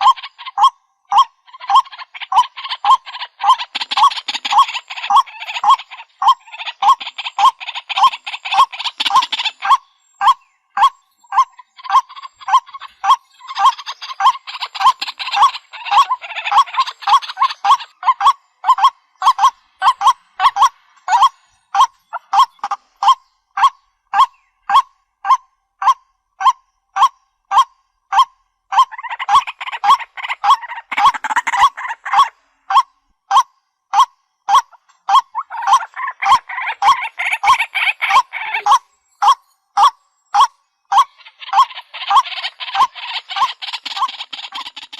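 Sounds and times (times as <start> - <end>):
waterhen calling: 0.0 - 44.9
harsh rasping croaks: 34.6 - 44.9.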